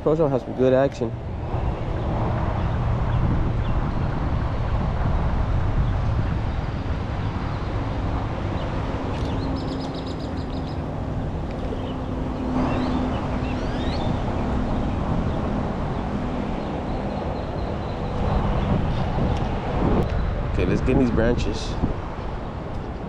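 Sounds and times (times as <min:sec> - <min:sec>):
wind buffeting microphone: 0:00.0 - 0:23.0
birds chirping and whistling: 0:08.6 - 0:10.9, 0:11.5 - 0:16.0.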